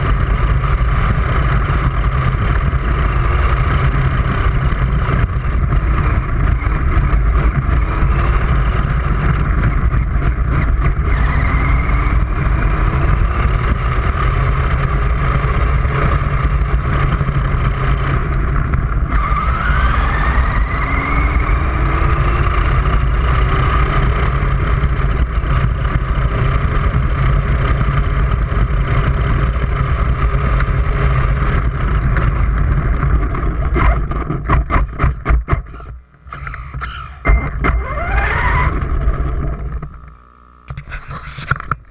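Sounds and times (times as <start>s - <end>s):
low rumble drifting on dirt: 0.0s - 41.9s
toy car motor whining: 3.0s - 14.0s, 33.7s - 41.6s.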